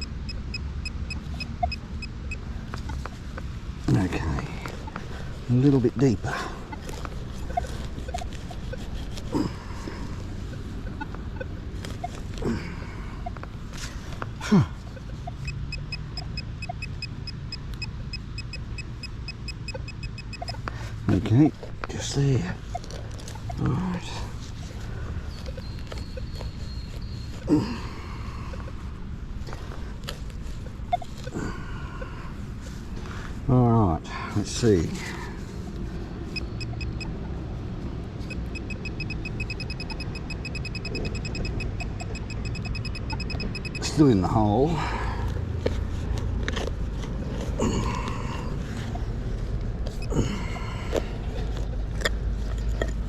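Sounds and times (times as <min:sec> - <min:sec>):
rapid high beeps: 0:00.0 - 0:03.2, 0:05.9 - 0:12.2, 0:14.8 - 0:20.7, 0:36.3 - 0:37.1, 0:38.3 - 0:44.0.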